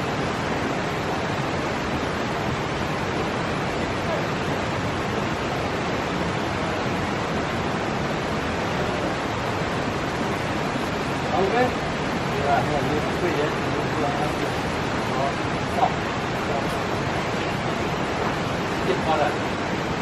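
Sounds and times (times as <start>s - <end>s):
loud steady rushing noise: 0.0s - 20.0s.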